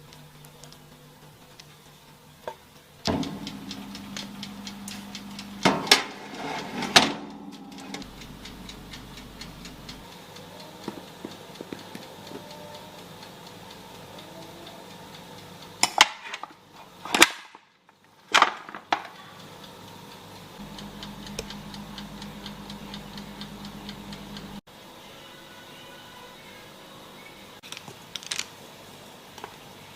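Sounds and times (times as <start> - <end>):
fast steady ticking: 0.0 - 6.5, 7.2 - 15.9, 19.4 - 24.6.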